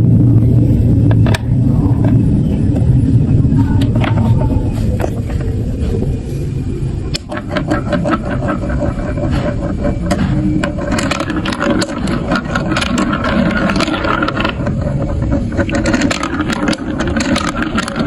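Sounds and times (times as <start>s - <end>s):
marbles clicking and clattering: 3.6s - 5.5s, 7.1s - 18.0s
marbles rolling on plastic run: 3.6s - 5.5s, 7.1s - 18.0s.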